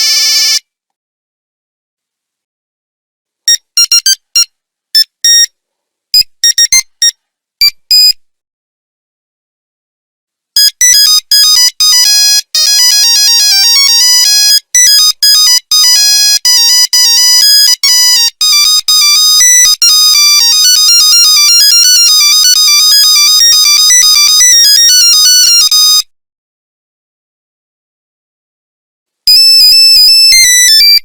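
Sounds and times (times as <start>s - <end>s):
monophonic ringtone melody: 10.6s - 26.0s, 29.3s - 31.0s.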